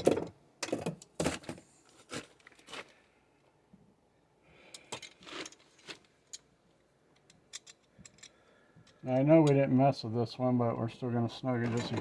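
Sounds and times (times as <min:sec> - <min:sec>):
metal tools clinking and scraping: 0:07.2 - 0:09.7, 0:11.5 - 0:12.0.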